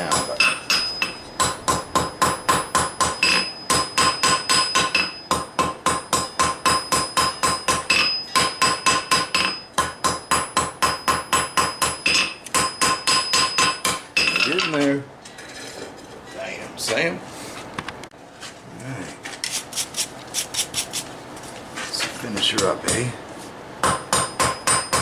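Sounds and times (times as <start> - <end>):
hammer striking hot steel on anvil: 0.0 - 14.8, 23.8 - 25.0.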